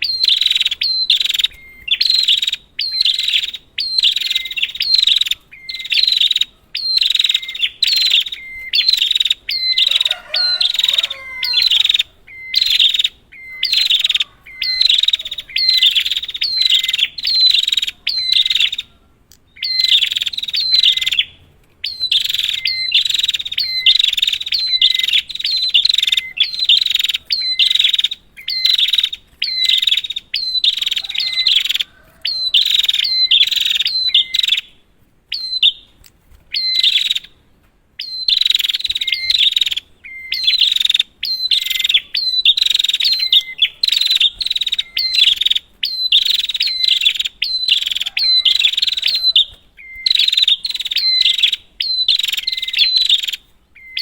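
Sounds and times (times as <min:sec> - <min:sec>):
bird chirping rapidly: 0:00.0 - 0:35.9, 0:36.5 - 0:37.4, 0:38.0 - 0:54.0.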